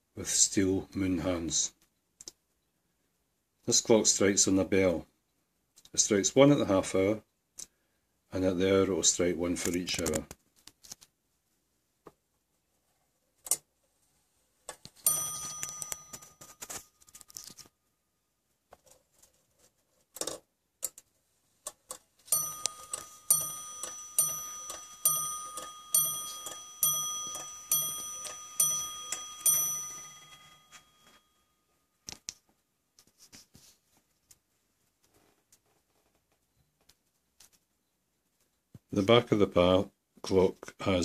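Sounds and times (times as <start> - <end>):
clock movement clicks: 14.7 - 17.7, 20.2 - 31.2
clock striking on bell: 15.0 - 16.6, 22.3 - 31.3.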